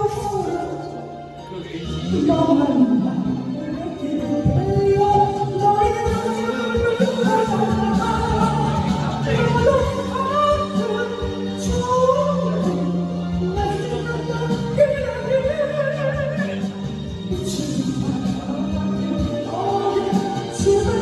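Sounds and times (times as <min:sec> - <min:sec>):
instrumental backing music: 0:00.0 - 0:21.0
person singing: 0:00.0 - 0:21.0.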